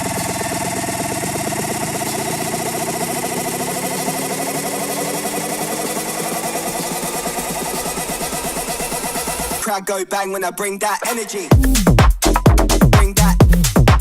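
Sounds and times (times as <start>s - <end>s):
buzzing synth pulse rising: 0.0s - 9.6s.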